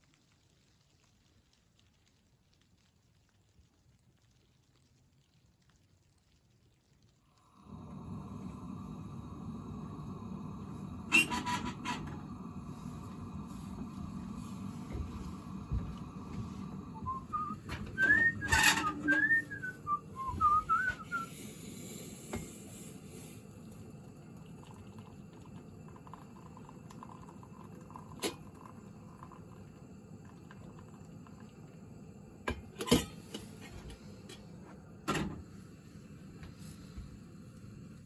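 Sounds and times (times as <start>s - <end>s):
person whistling a tune: 17.0s - 21.3s.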